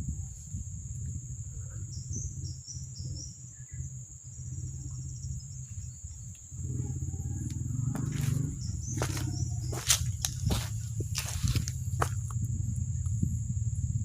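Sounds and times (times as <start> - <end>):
insect high-pitched drone: 0.0 - 14.0
low uneven rumble: 0.0 - 14.0.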